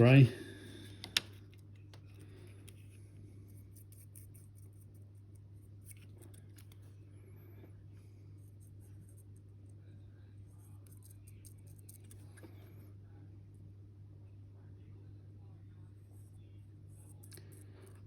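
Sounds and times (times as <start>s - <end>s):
steady low hum: 0.0s - 18.0s
paintbrush clicks and scratches: 0.9s - 7.0s, 8.3s - 12.7s, 16.9s - 18.0s.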